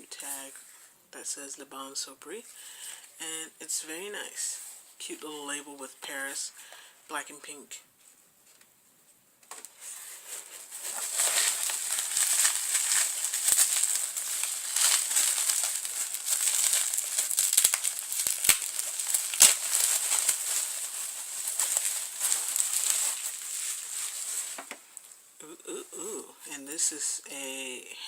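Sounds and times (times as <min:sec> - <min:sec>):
crinkly packaging rustling: 0:09.5 - 0:25.2.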